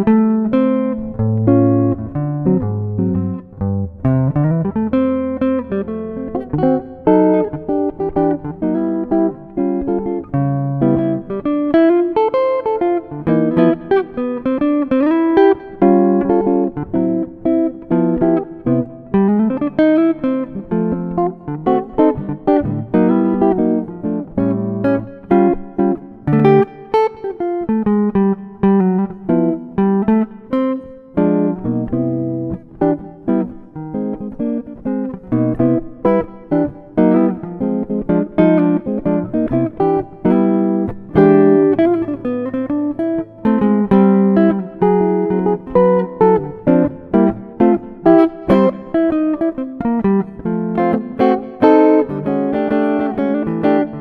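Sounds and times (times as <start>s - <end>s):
guitar plucking a melody: 0.0s - 54.0s.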